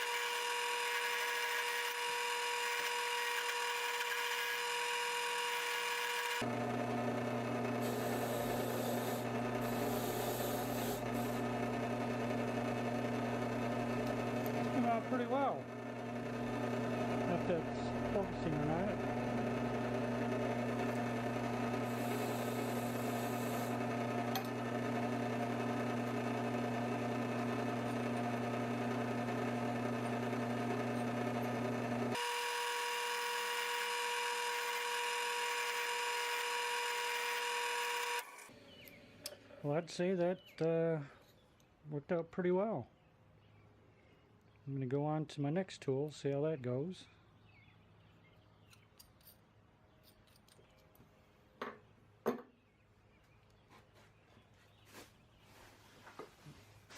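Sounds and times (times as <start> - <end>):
wire wheel brushing metal: 0.0 - 6.5, 7.6 - 11.9, 20.6 - 24.4
small power tool motor: 0.0 - 38.6.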